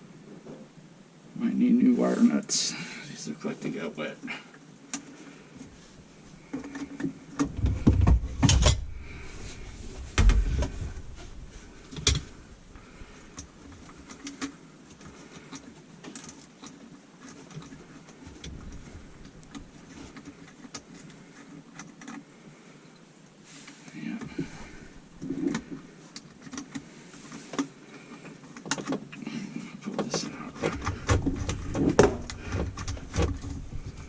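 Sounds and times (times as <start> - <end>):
heavy bumps and knocks: 7.4 - 12.3.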